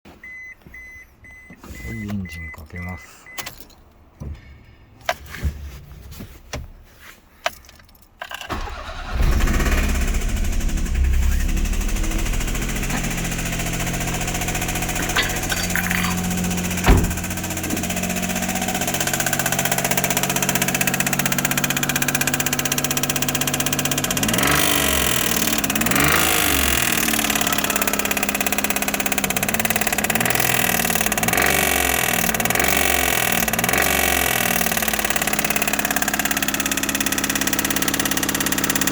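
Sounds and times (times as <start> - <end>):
car engine idling and revving: 8.4 - 38.9.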